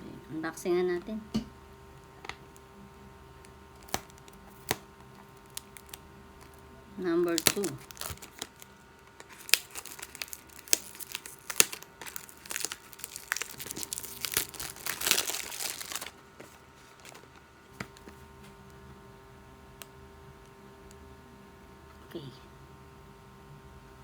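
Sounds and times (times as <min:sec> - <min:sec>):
packaging crinkling and tearing: 0:03.4 - 0:06.6, 0:07.2 - 0:18.2.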